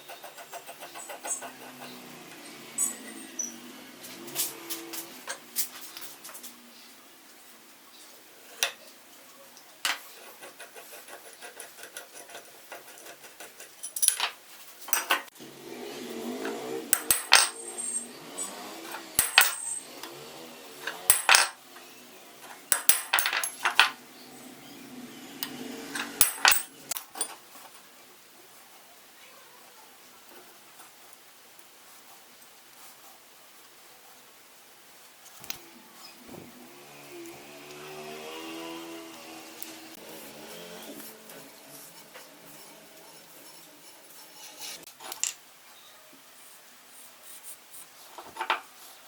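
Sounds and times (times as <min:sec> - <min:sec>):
metal tools clinking: 0:13.6 - 0:15.3, 0:16.9 - 0:20.2, 0:20.8 - 0:21.6, 0:22.5 - 0:24.0, 0:25.9 - 0:27.4.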